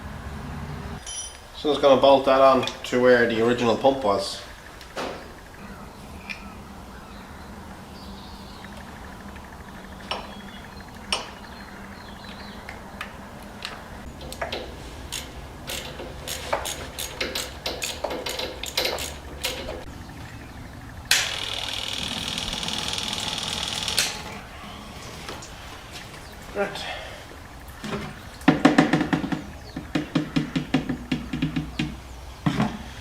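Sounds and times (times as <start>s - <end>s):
metal hand tools clicking: 14.2s - 19.7s.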